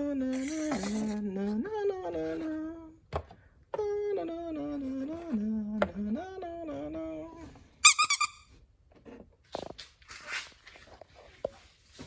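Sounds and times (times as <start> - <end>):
person humming a tune: 0.0 - 2.9, 3.8 - 7.4.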